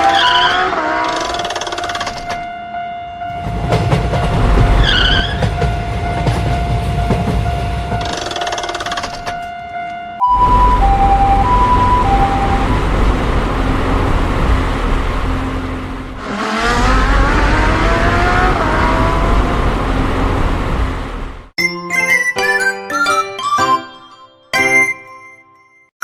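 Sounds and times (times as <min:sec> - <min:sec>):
heavy low vehicle rumble: 0:09.4 - 0:21.6
high-low two-note tone: 0:10.2 - 0:13.2
rising whine: 0:10.2 - 0:21.5.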